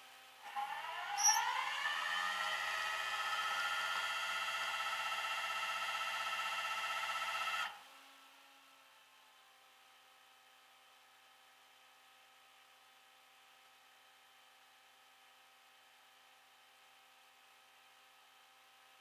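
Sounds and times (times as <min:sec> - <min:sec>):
motor whining: 0:00.4 - 0:07.7.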